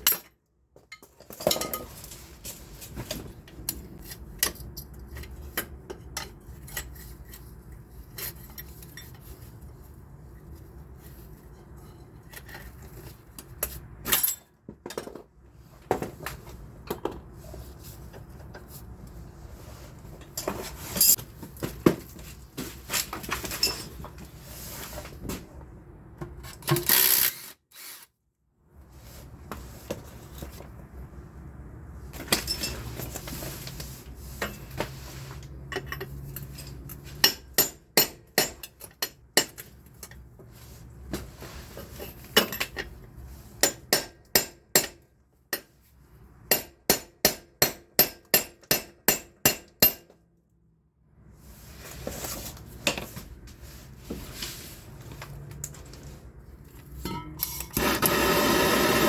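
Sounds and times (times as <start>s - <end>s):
tool clinks and knocks: 0.0s - 7.4s, 11.6s - 15.3s, 32.2s - 33.3s, 41.8s - 42.9s, 56.8s - 58.1s
hammer striking steel: 57.0s - 57.9s.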